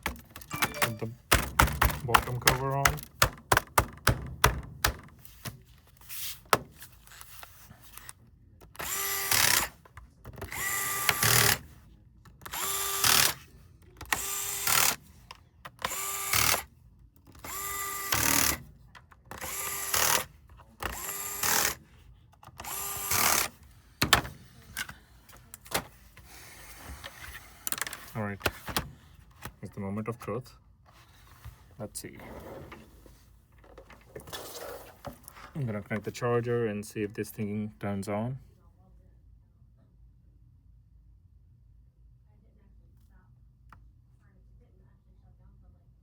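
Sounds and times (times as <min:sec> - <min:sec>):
electric screwdriver whirring: 0:08.7 - 0:09.8, 0:10.4 - 0:11.7, 0:12.4 - 0:15.0, 0:15.8 - 0:16.7, 0:17.3 - 0:18.7, 0:19.3 - 0:21.8, 0:22.5 - 0:24.9.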